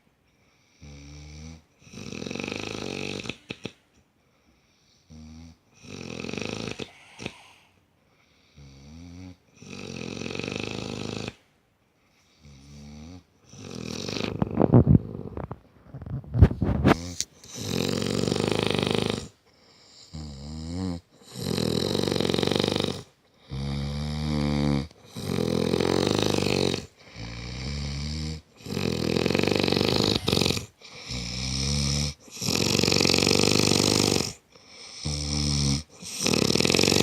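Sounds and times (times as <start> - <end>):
man snoring loudly: 0.8 - 3.8, 5.1 - 7.7, 8.6 - 11.4, 12.4 - 15.4, 16.8 - 37.0.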